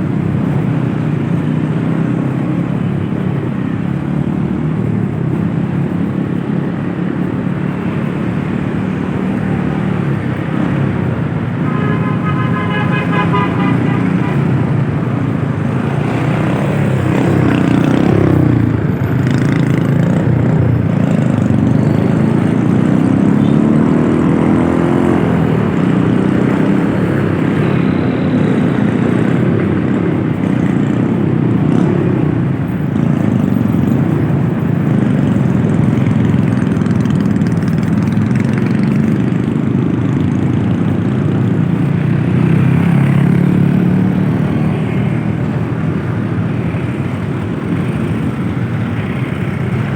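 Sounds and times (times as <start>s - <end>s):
road and wind noise: 0.0s - 49.9s.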